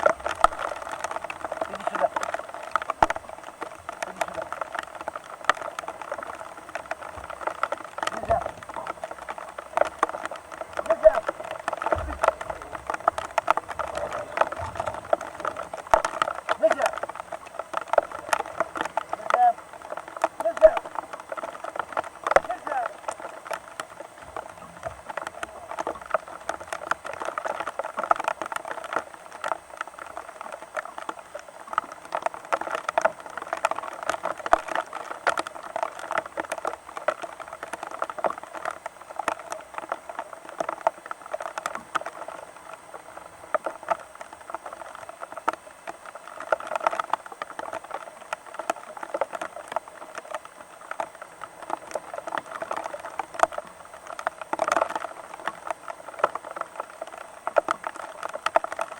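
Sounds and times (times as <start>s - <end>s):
rain pattering: 0.0s - 58.9s.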